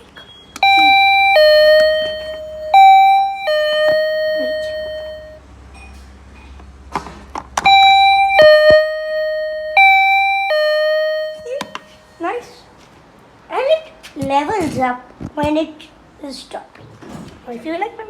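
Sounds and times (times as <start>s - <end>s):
elevator two-tone chime: 0.2s - 6.0s, 7.6s - 12.4s.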